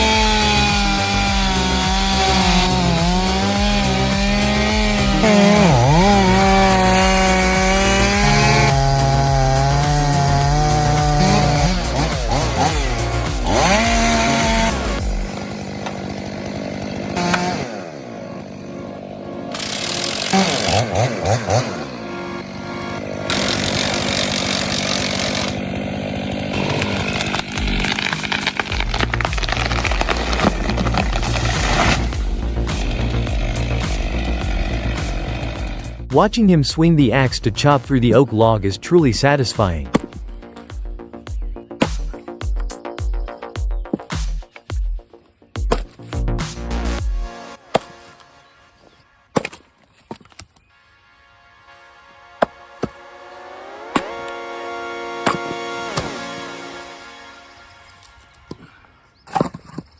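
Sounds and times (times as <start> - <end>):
background music: 0.0 - 24.0, 27.4 - 49.5, 50.7 - 58.8
chainsaw cutting wood: 0.0 - 36.3, 45.6 - 48.4, 53.6 - 58.7.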